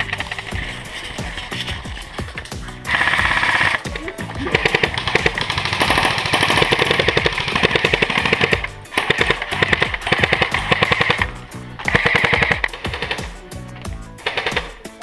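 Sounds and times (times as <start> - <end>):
background music: 0.0 - 15.0
airsoft guns firing full-auto: 2.4 - 3.9, 4.5 - 13.4, 14.2 - 14.9.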